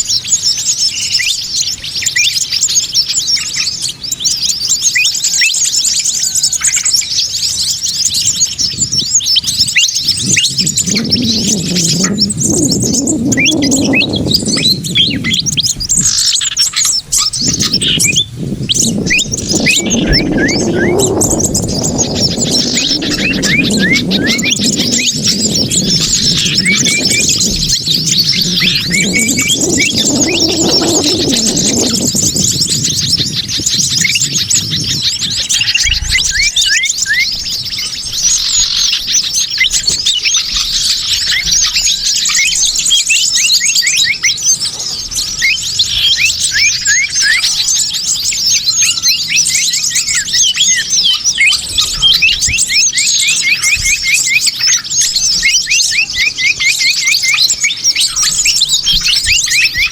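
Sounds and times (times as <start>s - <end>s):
small birds chirping and twittering: 0.0s - 59.9s
low wavering bird call: 9.5s - 37.4s.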